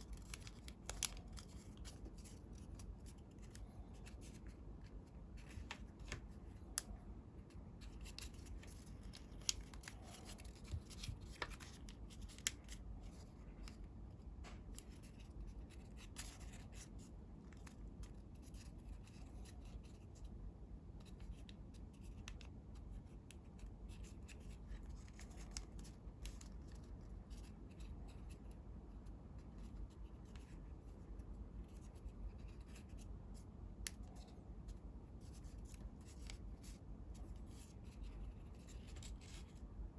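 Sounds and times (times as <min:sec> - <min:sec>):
paper crinkling and rustling: 0:00.0 - 0:20.1, 0:23.3 - 0:28.6.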